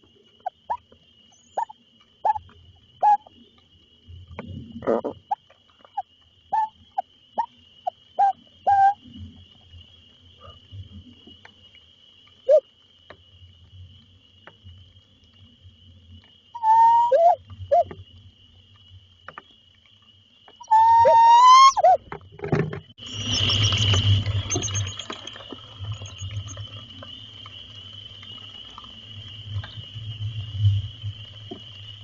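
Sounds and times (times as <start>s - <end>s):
owl calling: 3.0s - 3.3s, 4.8s - 6.8s, 8.2s - 9.0s, 16.6s - 18.0s, 20.6s - 22.0s.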